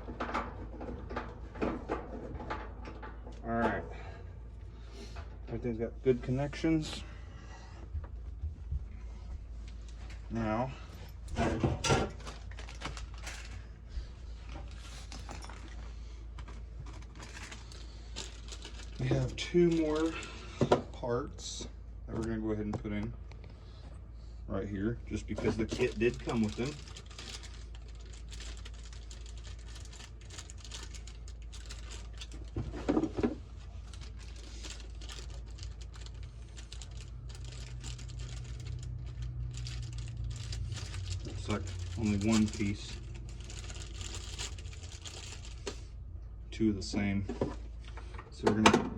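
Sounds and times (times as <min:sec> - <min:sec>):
steady low hum: 0:00.0 - 0:48.9
plastic bag crinkling: 0:12.1 - 0:13.7, 0:14.6 - 0:20.5, 0:25.5 - 0:45.8.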